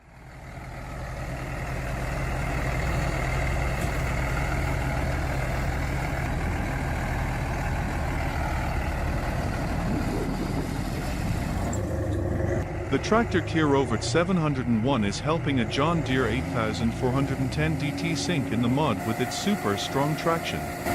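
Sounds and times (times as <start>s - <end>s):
heavy vehicle engine running: 0.0s - 20.9s.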